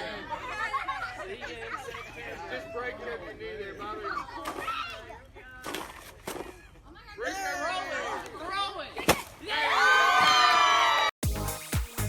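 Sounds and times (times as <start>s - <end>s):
people shouting and cheering: 9.4s - 11.2s
electronic dance music: 11.2s - 12.0s.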